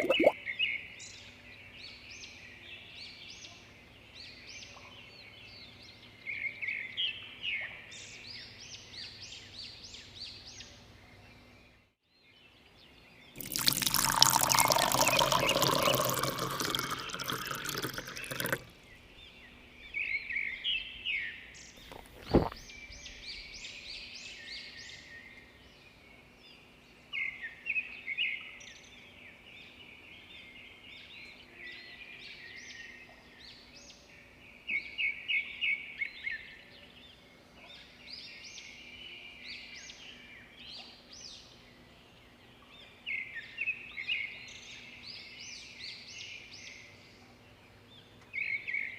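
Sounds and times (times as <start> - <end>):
water pouring: 0.0 - 0.3, 13.4 - 18.8, 21.8 - 22.7
small birds chirping: 0.0 - 0.7, 13.2 - 26.6.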